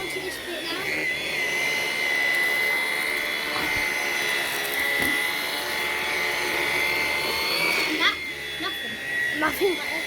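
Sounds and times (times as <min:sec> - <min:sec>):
vacuum cleaner high-pitched whine: 0:00.0 - 0:10.0.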